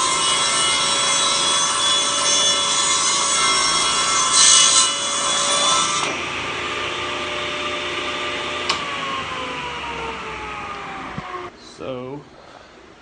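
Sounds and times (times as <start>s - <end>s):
table saw cutting a board: 0.0s - 11.5s.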